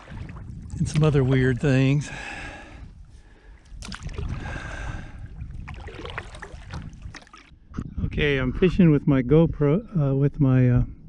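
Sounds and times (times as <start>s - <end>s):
water splashing and lapping: 0.0s - 7.6s.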